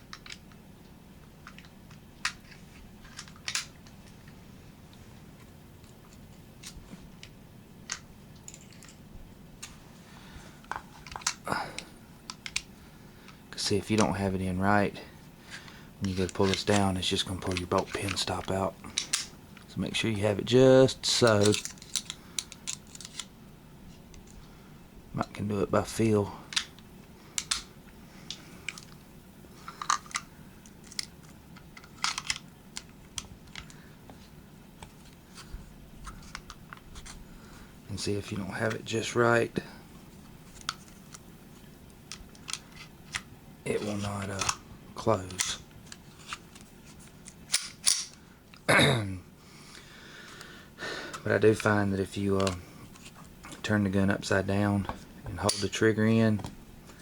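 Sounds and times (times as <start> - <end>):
faint clicks of metal parts: 0.0 - 9.0, 9.6 - 14.3, 15.0 - 19.8, 21.0 - 23.3, 26.2 - 37.3, 38.0 - 48.7, 49.7 - 53.8
metal parts clicking and knocking: 0.1 - 0.6, 1.4 - 3.8, 7.9 - 9.0, 10.7 - 11.4, 12.3 - 12.6, 21.2 - 23.3, 27.4 - 27.6, 29.6 - 31.1, 31.8 - 33.8, 47.5 - 48.2.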